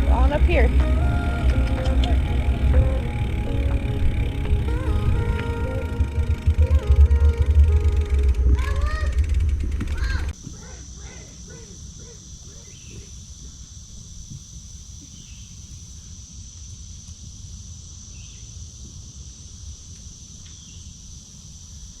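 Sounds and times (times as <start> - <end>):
constant low rumble: 0.0 - 13.0
insects buzzing: 0.0 - 22.0.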